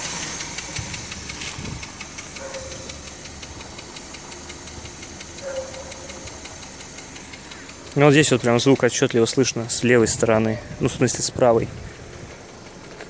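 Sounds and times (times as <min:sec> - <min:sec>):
car engine running: 0:00.0 - 0:13.0
engine ticking knock: 0:00.0 - 0:13.0.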